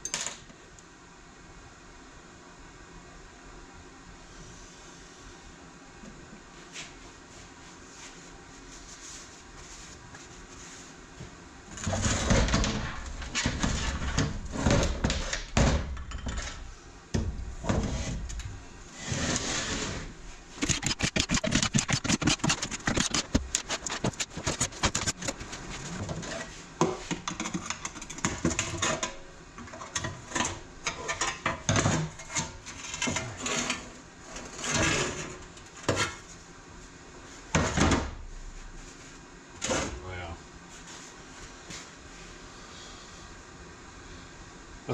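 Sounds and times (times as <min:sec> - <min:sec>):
metal parts clanking and scraping: 0:20.6 - 0:25.4.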